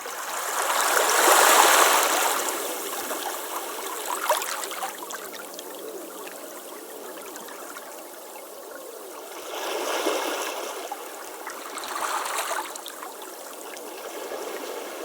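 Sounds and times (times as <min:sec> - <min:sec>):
waves on stone beach: 0:00.0 - 0:06.0, 0:09.2 - 0:15.0.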